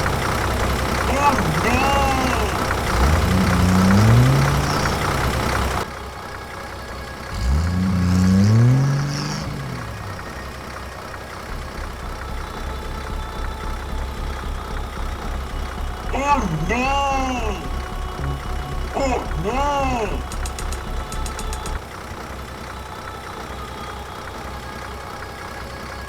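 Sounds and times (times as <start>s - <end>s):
tractor engine revving and idling: 0.0s - 26.0s.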